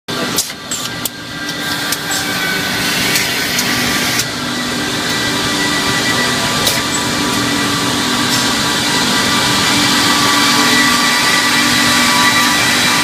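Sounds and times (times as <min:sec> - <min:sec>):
machine humming: 0:00.1 - 0:13.0.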